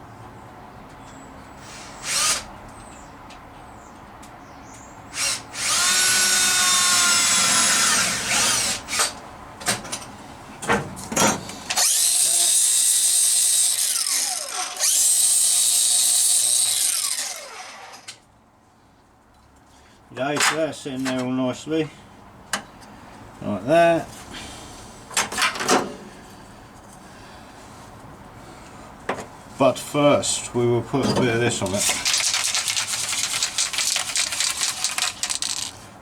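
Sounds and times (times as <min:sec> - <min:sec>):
electric drill drilling metal: 0:01.8 - 0:02.5, 0:05.2 - 0:09.1, 0:11.8 - 0:18.2.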